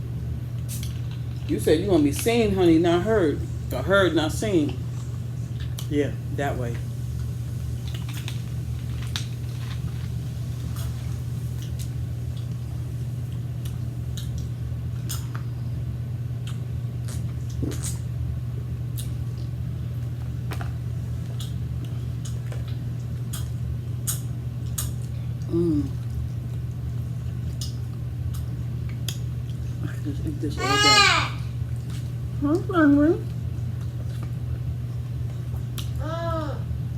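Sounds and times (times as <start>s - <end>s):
steady low hum: 0.0s - 36.9s
chewing and mouth smacks: 0.5s - 2.4s, 4.6s - 6.0s, 7.1s - 15.6s, 16.4s - 30.1s, 31.6s - 36.0s.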